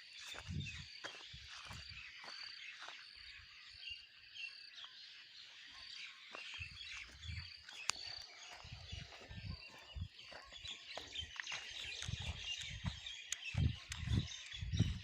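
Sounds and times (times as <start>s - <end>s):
small birds chirping: 0.0s - 15.0s
wind gusting against microphone: 11.9s - 15.0s.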